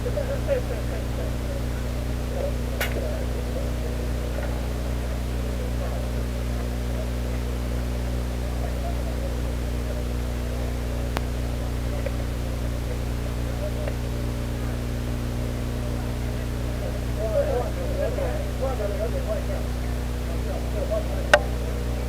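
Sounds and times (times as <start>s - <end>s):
low electrical hum with hiss: 0.0s - 22.0s
sharp click: 2.8s - 3.1s.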